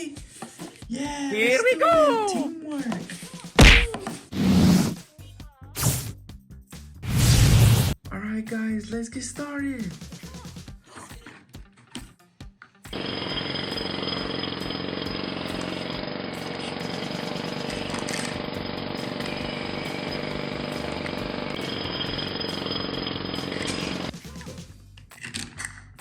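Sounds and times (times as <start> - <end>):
background music: 0.0 - 13.0
jackhammer rattle: 13.0 - 24.2.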